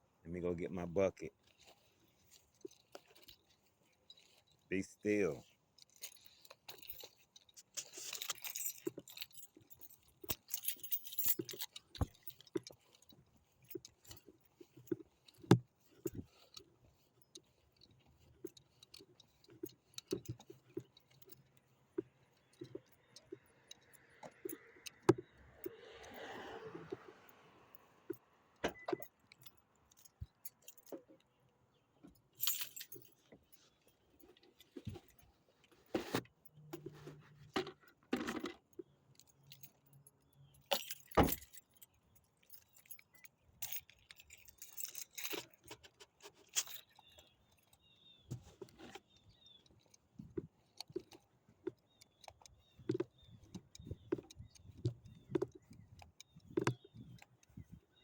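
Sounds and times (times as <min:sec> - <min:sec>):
keys and metal gear jingling: 0:01.3 - 0:26.2, 0:28.6 - 0:31.3, 0:32.0 - 0:58.0
bucket handled: 0:34.7 - 0:38.6.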